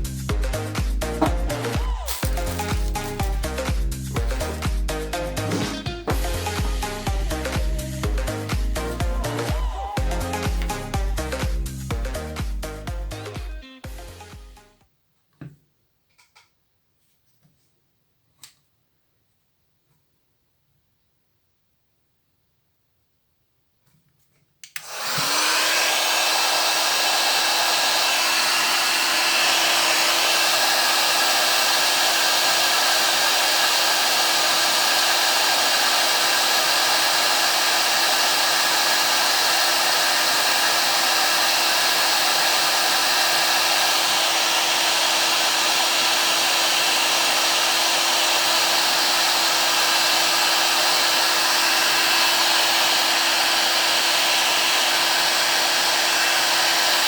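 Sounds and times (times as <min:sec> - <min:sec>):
hot air gun fan whine: 0:01.1 - 0:11.5, 0:24.8 - 0:57.0.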